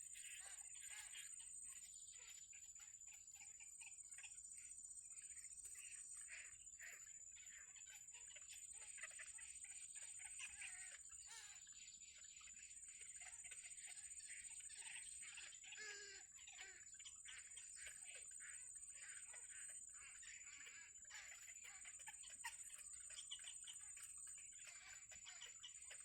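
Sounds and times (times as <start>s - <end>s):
small birds chirping: 0.0s - 26.0s.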